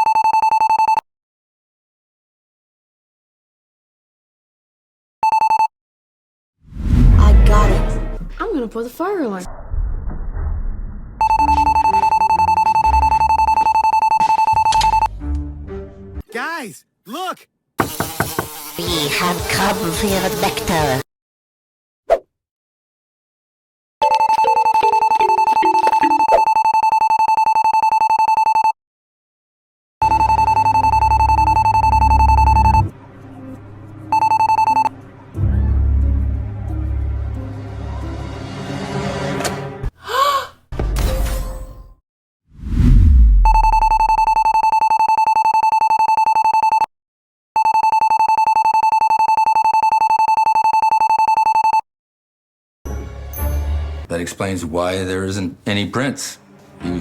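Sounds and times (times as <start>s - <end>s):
low hum: 6.7s - 8.8s
deep low boom: 9.5s - 11.2s
fire alarm ringing: 11.2s - 15.1s, 47.6s - 51.8s.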